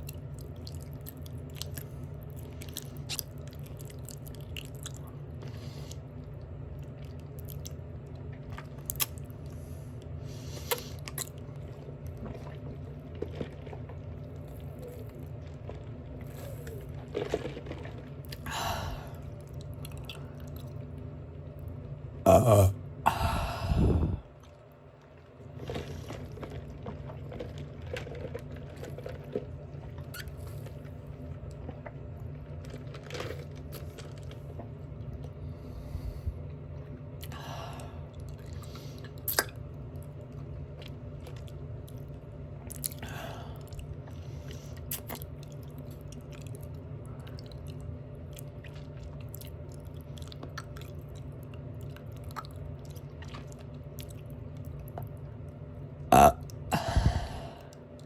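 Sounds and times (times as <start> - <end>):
open-mouth chewing: 0.0 - 6.1, 37.2 - 55.2.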